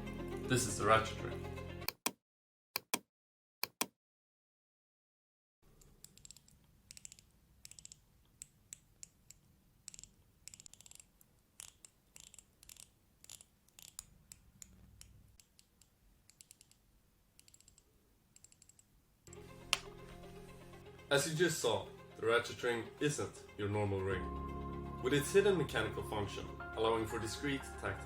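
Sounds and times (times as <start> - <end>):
small ratchet clicks: 6.0 - 16.8, 17.4 - 17.8.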